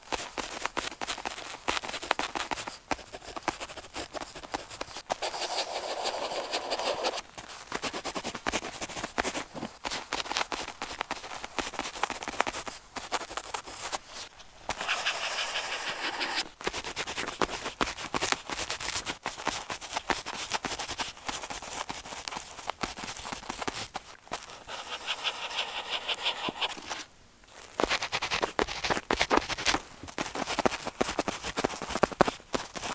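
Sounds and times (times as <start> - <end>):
pen scratching on paper: 2.0 - 7.2, 14.7 - 16.5, 24.4 - 27.1.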